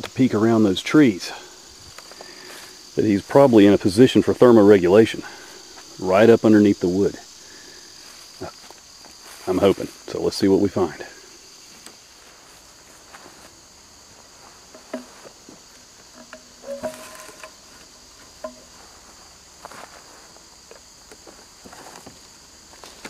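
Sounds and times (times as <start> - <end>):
insect chorus: 0.0 - 23.0
steps in dry leaves: 8.0 - 10.1.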